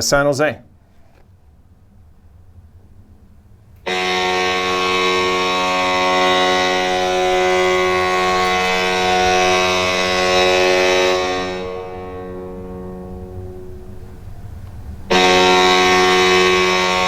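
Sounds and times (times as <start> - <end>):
goal horn blast: 3.8 - 14.2, 15.1 - 17.0.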